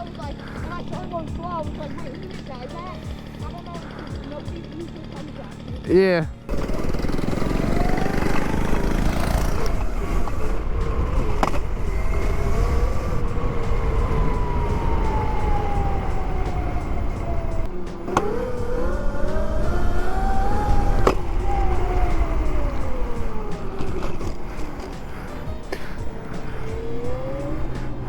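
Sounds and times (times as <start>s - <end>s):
electric motor whining: 0.0s - 28.0s
wind and tyre rumble: 0.0s - 28.0s.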